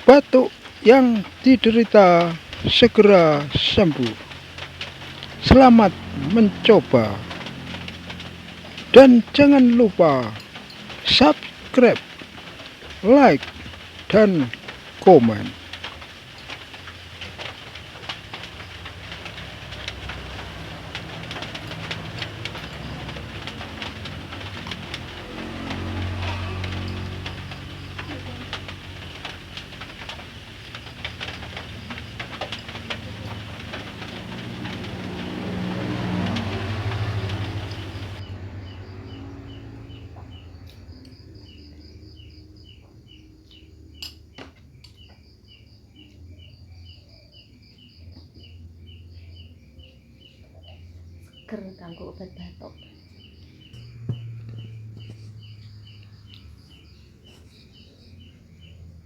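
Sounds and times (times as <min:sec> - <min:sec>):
vehicle engine hum passing by: 0:01.3 - 0:15.4, 0:17.4 - 0:43.2, 0:52.7 - 0:59.0.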